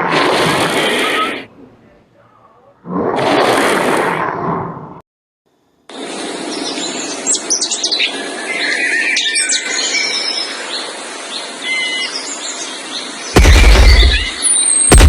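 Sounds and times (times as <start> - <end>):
bird-like chirps and tweets: 6.4 - 14.9.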